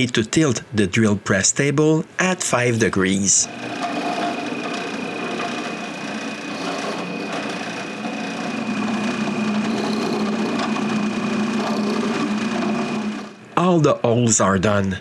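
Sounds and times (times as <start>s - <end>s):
drill press boring into wood: 3.3s - 13.5s.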